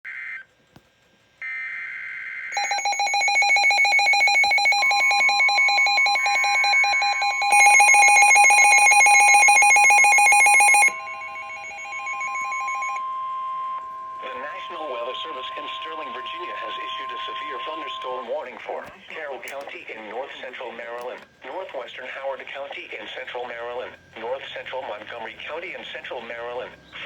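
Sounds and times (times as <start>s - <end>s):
pulsing electronic alarm beeping: 2.5s - 18.6s
steady warning tone: 2.5s - 27.0s.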